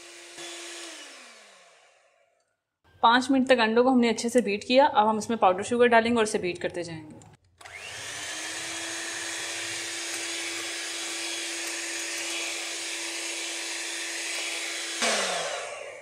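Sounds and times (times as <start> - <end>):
electric hand beater whining: 0.0 - 2.2, 7.6 - 16.0.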